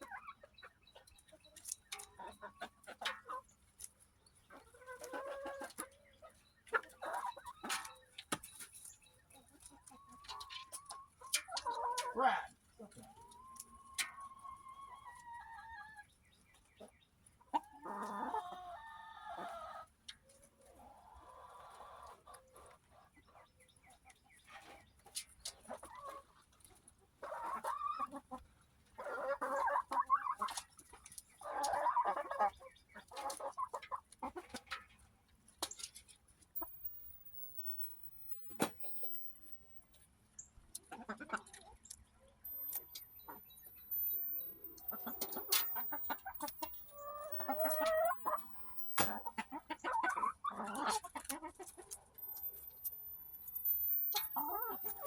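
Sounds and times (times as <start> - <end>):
hens clucking and squawking: 0.0 - 35.8, 36.5 - 39.9, 40.8 - 41.8, 42.5 - 55.0.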